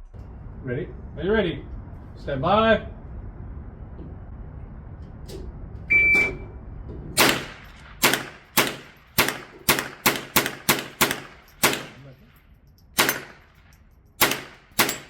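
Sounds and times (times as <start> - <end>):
shot timer beep: 5.9 - 6.5
rifle shots: 7.2 - 12.2, 13.0 - 15.0.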